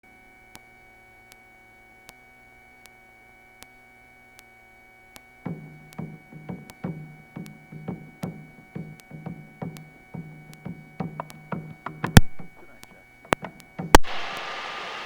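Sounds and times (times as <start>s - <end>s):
faint electrical hum: 0.0s - 15.0s
soft ticking: 5.1s - 14.6s
sharp knocking or plucked sounds: 5.5s - 14.7s.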